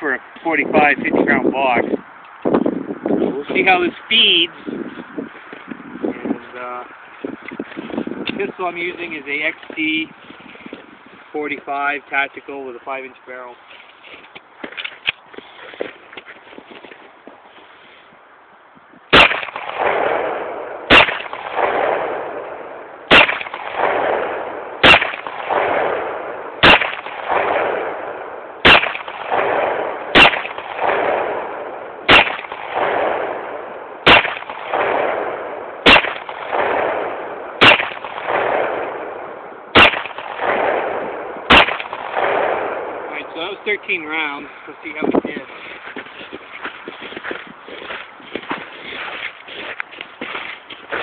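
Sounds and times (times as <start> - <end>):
pistol shots with echo: 19.1 - 44.6.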